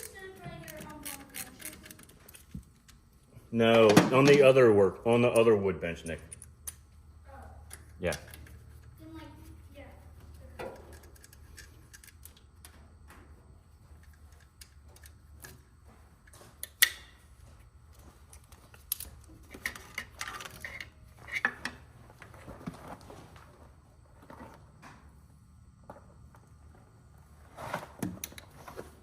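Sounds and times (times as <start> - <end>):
tools and parts clinking: 0.0 - 3.0, 5.2 - 7.0, 10.5 - 12.8, 14.0 - 17.2, 18.3 - 22.6
steady low hum: 0.0 - 29.0.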